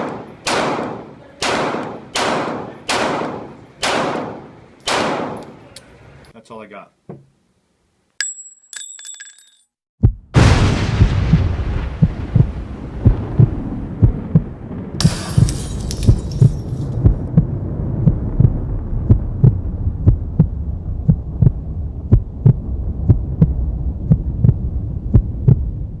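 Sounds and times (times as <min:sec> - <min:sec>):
low pulsing thumps: 0:10.0 - 0:26.0
low hum: 0:10.4 - 0:26.0.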